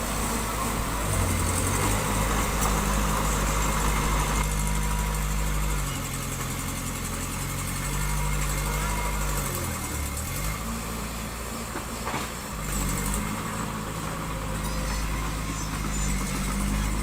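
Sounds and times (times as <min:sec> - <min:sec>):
heavy machinery diesel engine: 0:00.0 - 0:17.0.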